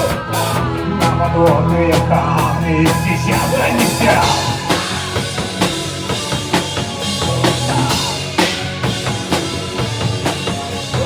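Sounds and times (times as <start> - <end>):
bass drum and snare beat: 0.0 - 11.0
live rock band playing: 0.0 - 11.0.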